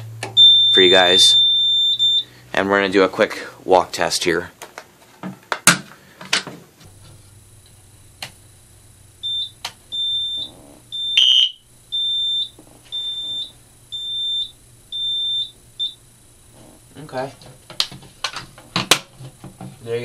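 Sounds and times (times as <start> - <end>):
alarm panel beeping: 0.4 - 2.3, 8.2 - 17.3.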